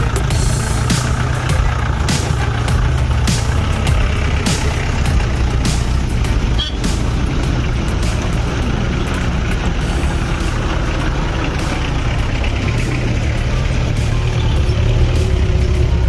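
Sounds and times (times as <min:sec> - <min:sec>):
vehicle engine rumbling: 0:00.0 - 0:16.0.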